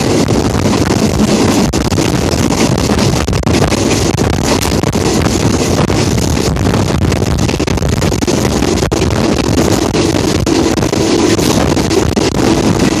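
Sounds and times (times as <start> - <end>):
diesel locomotive running: 0.0 - 13.0
wind buffeting microphone: 0.0 - 13.0.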